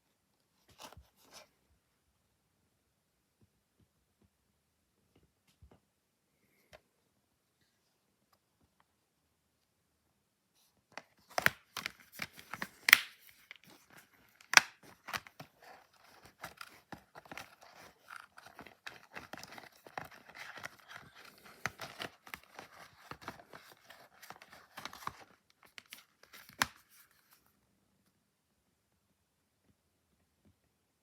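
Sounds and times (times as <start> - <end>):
packaging crinkling and rustling: 11.2 - 27.4
plastic case clicks and snaps: 11.3 - 13.3.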